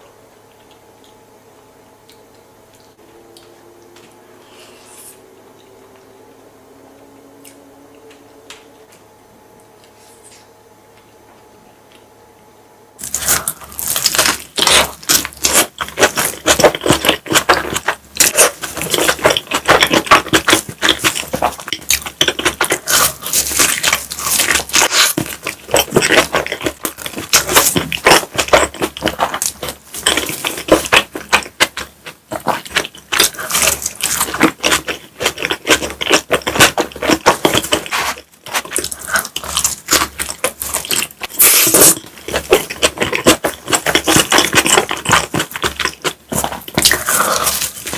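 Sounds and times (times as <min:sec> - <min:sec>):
chewing and mouth noises: 0:13.0 - 0:47.9.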